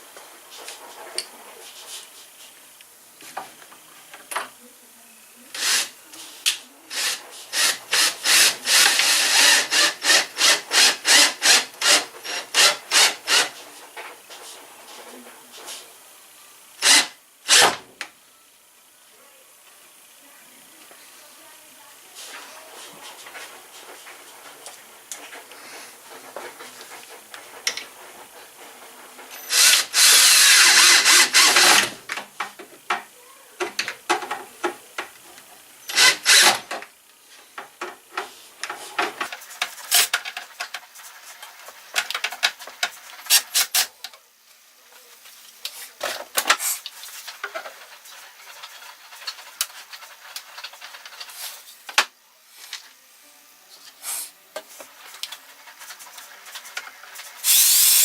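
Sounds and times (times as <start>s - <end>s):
power tool running: 5.6s - 6.0s, 6.9s - 13.6s, 16.8s - 17.8s, 29.3s - 32.1s, 35.8s - 36.8s, 57.4s - 58.0s.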